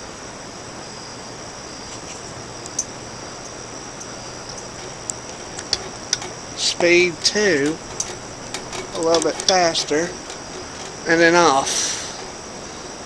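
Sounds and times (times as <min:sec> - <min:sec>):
ceiling fan humming: 0:00.0 - 0:13.0
insects chirping: 0:00.0 - 0:13.0.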